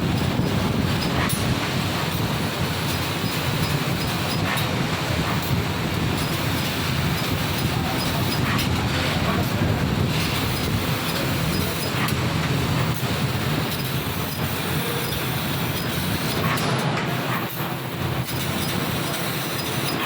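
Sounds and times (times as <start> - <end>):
laser cutting machine rumble: 0.0 - 20.0.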